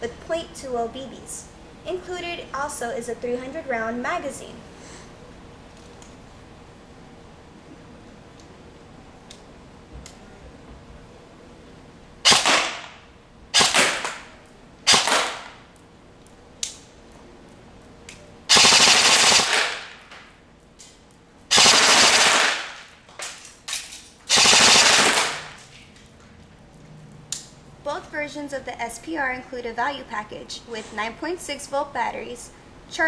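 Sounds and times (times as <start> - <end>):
airsoft rifle firing bursts: 13.6 - 14.2, 14.9 - 15.5, 18.5 - 20.0, 21.5 - 22.8, 24.3 - 25.6.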